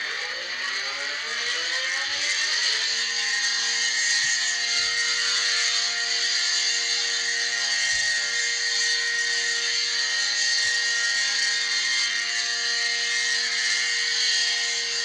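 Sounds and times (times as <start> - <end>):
tornado siren winding up: 0.0 - 3.2.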